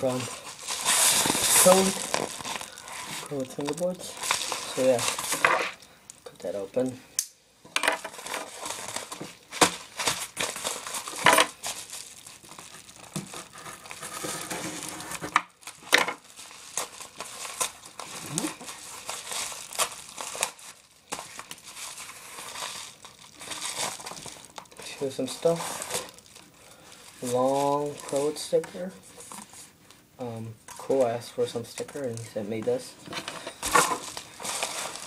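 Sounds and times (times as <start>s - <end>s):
packing material crinkling: 0.0s - 7.0s, 8.0s - 29.8s, 30.7s - 35.0s
package being torn open: 15.1s - 26.5s.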